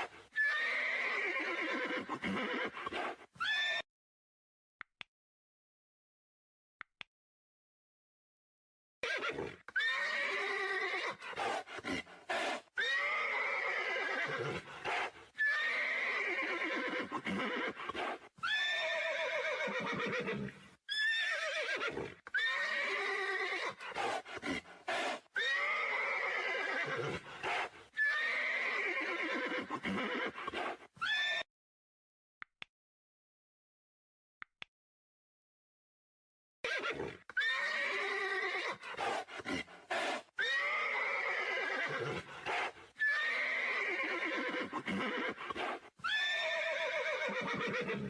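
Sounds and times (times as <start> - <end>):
horses whinnying: 0.0 - 3.8, 9.0 - 31.5, 36.6 - 48.0.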